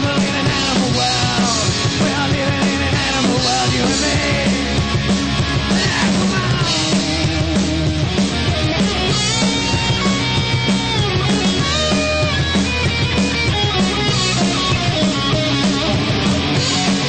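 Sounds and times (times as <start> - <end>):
punk rock band playing live: 0.0 - 17.0.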